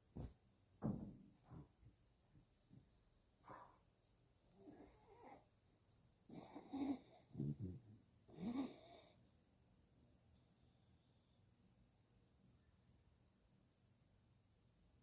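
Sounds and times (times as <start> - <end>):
dog snoring: 4.5 - 5.5, 6.3 - 9.2.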